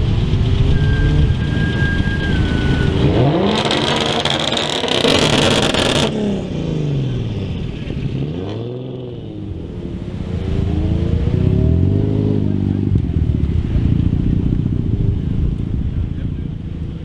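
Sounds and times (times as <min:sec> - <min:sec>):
car engine revving: 0:00.2 - 0:06.6.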